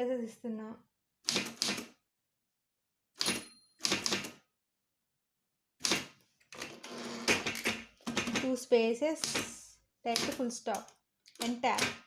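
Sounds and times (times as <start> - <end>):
typewriter keys clacking: 3.2 - 4.3.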